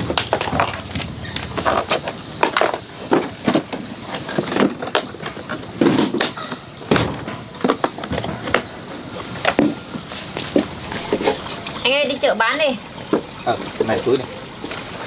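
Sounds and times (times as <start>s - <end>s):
irregular knocks and clatters: 0.0s - 11.9s.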